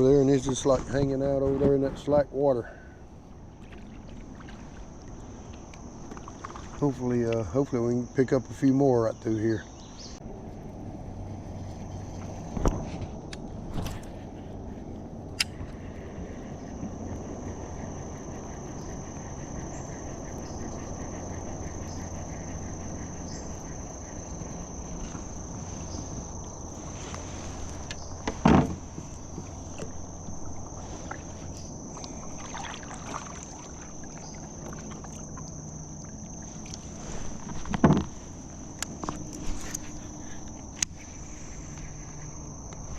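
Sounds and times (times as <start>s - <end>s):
knocks against boat: 28.2s - 30.0s, 37.6s - 38.1s.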